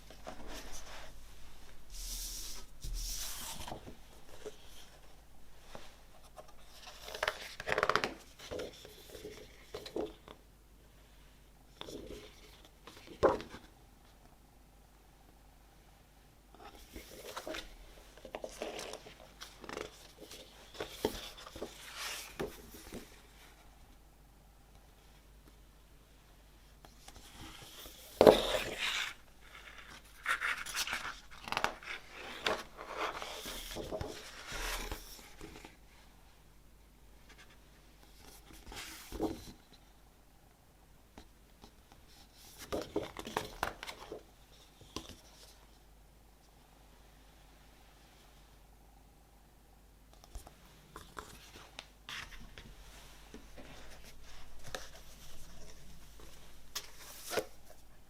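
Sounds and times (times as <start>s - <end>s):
paper and card rustling: 5.8s - 10.3s, 16.7s - 23.2s, 27.1s - 35.8s, 50.2s - 57.9s.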